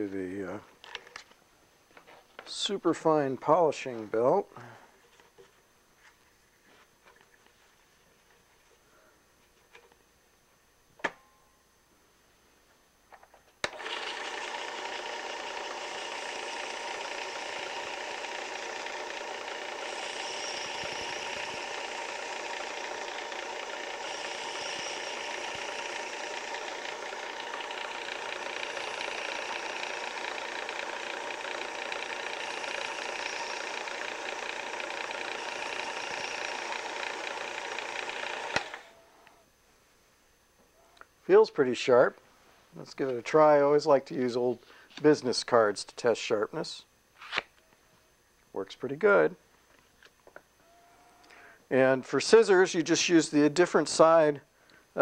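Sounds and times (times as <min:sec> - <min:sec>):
sharpener motor whine: 0:13.6 - 0:39.4.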